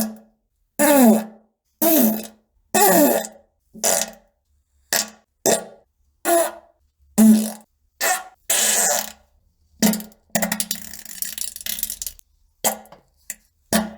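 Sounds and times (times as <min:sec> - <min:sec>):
fart sounds: 0:03.8 - 0:04.2, 0:07.2 - 0:09.1.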